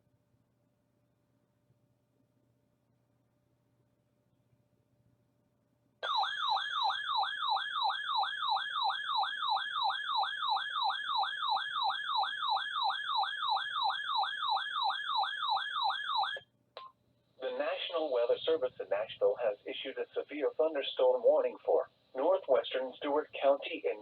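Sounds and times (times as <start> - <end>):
emergency alert siren warble: 6.0 - 16.4.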